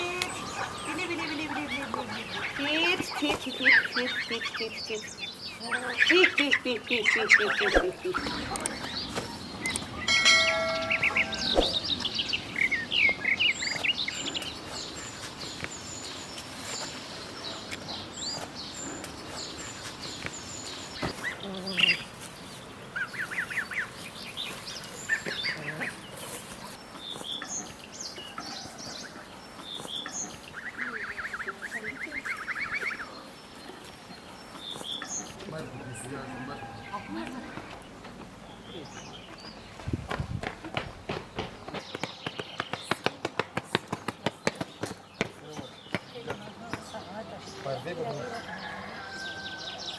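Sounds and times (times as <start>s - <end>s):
small birds chirping: 0.0s - 49.9s.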